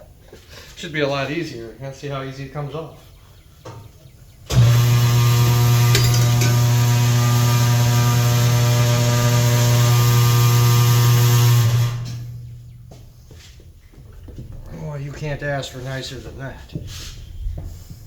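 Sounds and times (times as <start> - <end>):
tire changer motor humming: 4.4 - 14.7.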